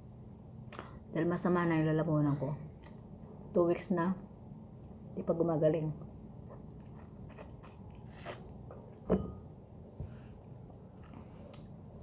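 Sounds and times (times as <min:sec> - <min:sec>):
person chewing wetly: 0:06.4 - 0:09.0.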